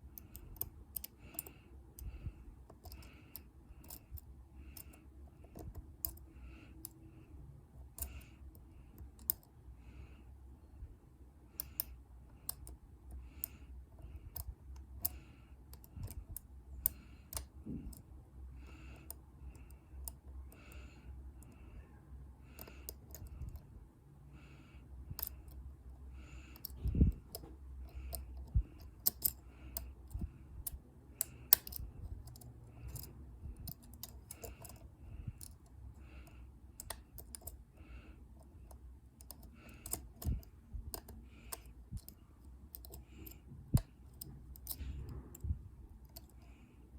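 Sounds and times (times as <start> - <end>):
lock pick clicking in lock: 2.7 - 7.0, 11.6 - 18.0, 22.6 - 23.6, 25.1 - 25.6, 26.5 - 37.6, 38.4 - 46.5.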